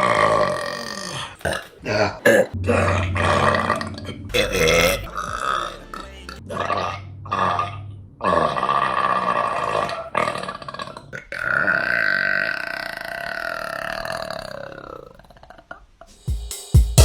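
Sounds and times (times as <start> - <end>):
music with drums: 16.1 - 17.0.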